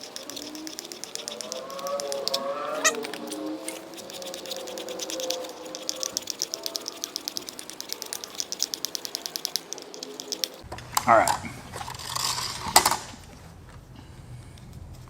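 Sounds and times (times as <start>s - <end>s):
knife sharpener clicking: 0.0s - 10.6s.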